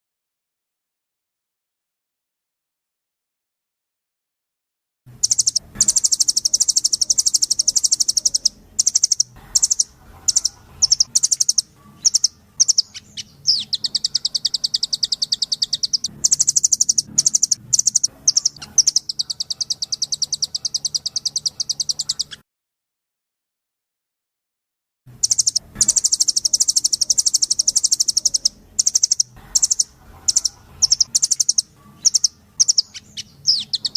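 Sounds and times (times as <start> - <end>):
bird rattling trills: 5.2 - 22.4, 25.2 - 33.9.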